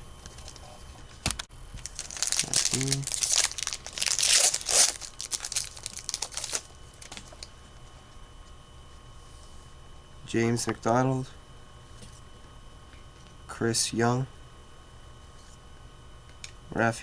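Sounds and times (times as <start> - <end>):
plastic wrapper crinkling and tearing: 1.8 - 7.5.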